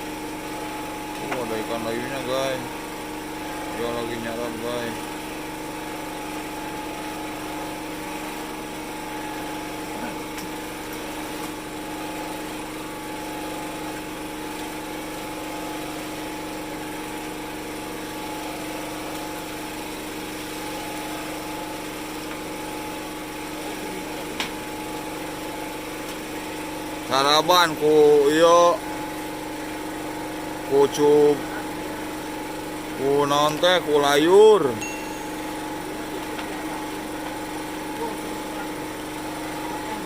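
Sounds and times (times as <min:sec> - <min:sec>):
small engine running: 0:00.0 - 0:40.0.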